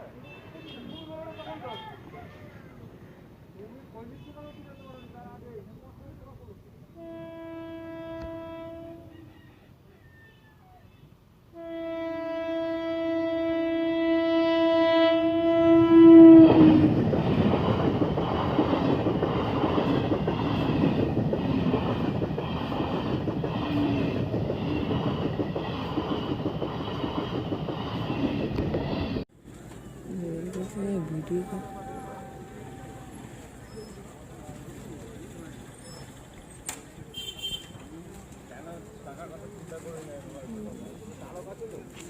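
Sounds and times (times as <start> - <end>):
locomotive horn blasts: 7.0 - 9.2, 11.5 - 16.9, 31.3 - 33.3, 37.1 - 37.8
train wheels rumbling on rails: 15.2 - 37.1.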